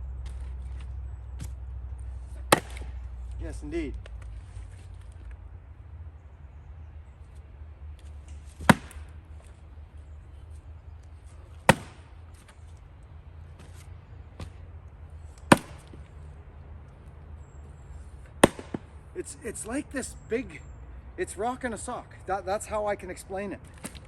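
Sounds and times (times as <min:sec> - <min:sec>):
axe chopping firewood: 0:00.2 - 0:01.6, 0:02.3 - 0:04.2, 0:08.0 - 0:09.6, 0:11.3 - 0:12.6, 0:15.3 - 0:16.1, 0:18.2 - 0:19.0, 0:23.7 - 0:24.0.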